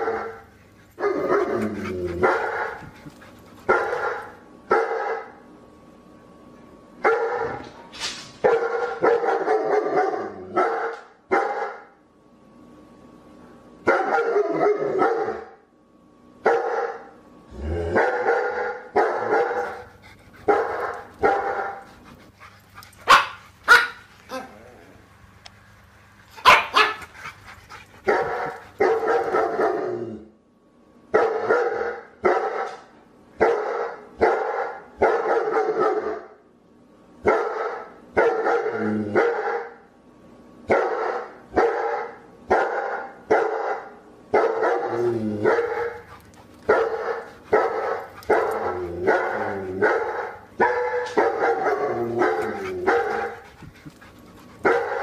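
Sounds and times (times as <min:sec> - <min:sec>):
dog barking: 0:03.7 - 0:05.4, 0:07.0 - 0:07.6, 0:08.4 - 0:11.9, 0:13.9 - 0:15.5, 0:16.4 - 0:17.1, 0:18.0 - 0:19.8, 0:23.0 - 0:24.4, 0:26.4 - 0:27.1, 0:28.1 - 0:29.8, 0:31.2 - 0:32.8, 0:33.4 - 0:36.3, 0:37.2 - 0:39.8, 0:40.7 - 0:46.0, 0:46.7 - 0:53.4, 0:54.6 - 0:55.0.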